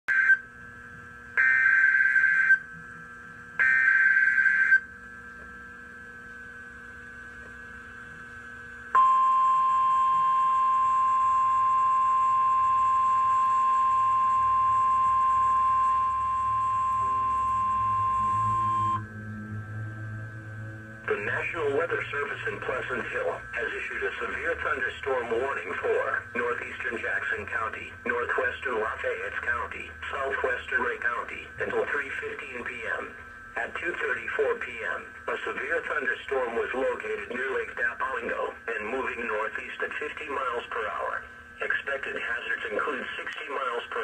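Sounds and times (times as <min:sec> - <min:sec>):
steady warning alarm beep: 0:00.1 - 0:00.6, 0:01.3 - 0:07.2, 0:08.9 - 0:36.6.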